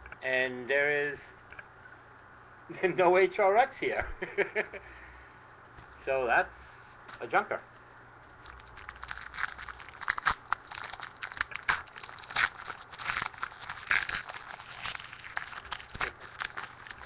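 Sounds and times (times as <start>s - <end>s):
wrapper tearing and crinkling: 8.4s - 17.0s.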